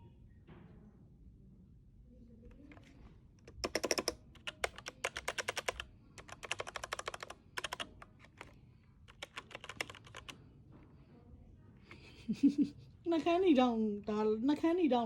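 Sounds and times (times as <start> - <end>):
mechanical keyboard key clicks: 2.7 - 8.5, 9.1 - 10.4.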